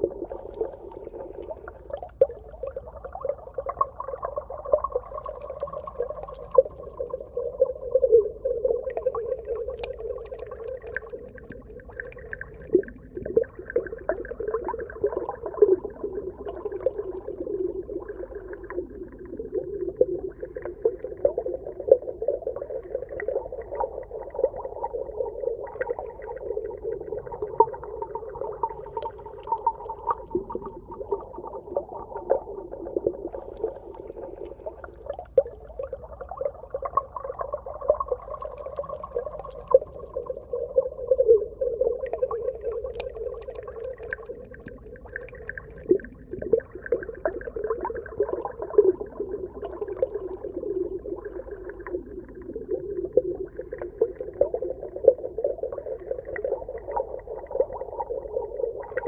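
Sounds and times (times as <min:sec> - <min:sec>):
crackling clicks: 0:09.8 - 0:11.6.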